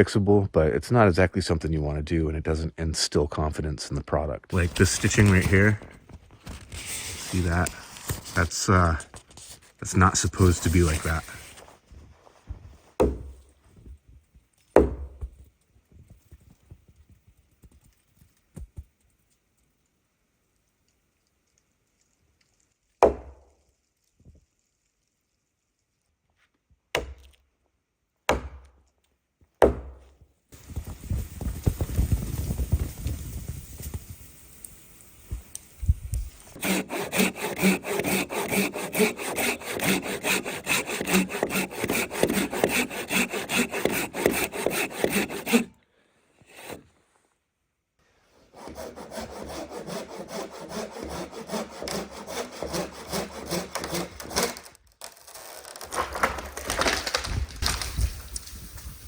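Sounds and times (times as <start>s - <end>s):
hand saw cutting wood: 4.5s - 5.9s, 6.9s - 9.0s, 10.0s - 11.6s, 13.0s - 13.5s, 36.6s - 45.8s, 46.4s - 46.9s, 48.5s - 54.8s
rustling: 4.5s - 20.0s, 46.4s - 47.4s, 53.8s - 59.0s
sharp knocks: 13.0s - 13.4s, 14.8s - 15.4s.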